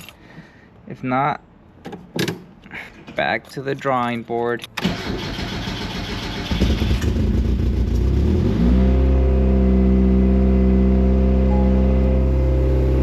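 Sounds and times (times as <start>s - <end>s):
car engine starting and idling: 4.8s - 8.4s.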